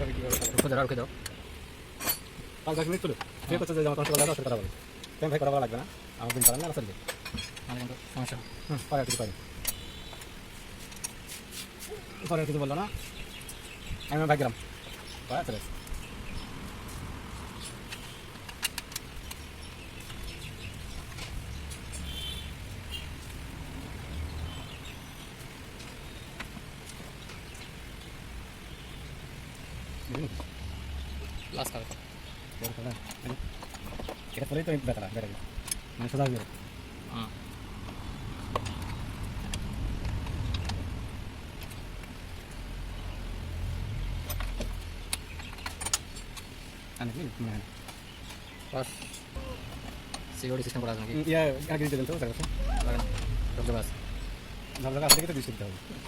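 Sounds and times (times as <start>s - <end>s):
vehicle engine rumbling: 15.4s - 34.3s, 36.0s - 56.0s
low steady hum: 49.3s - 56.0s
high chirping: 52.2s - 55.5s.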